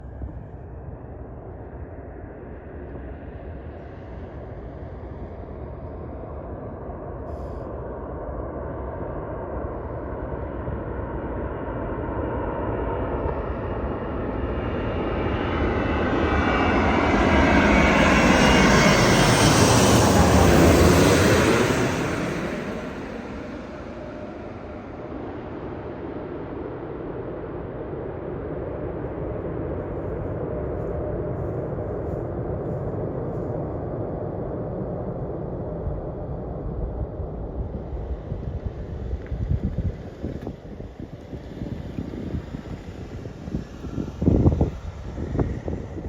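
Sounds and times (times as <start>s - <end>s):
airplane flying overhead: 0.0s - 46.0s.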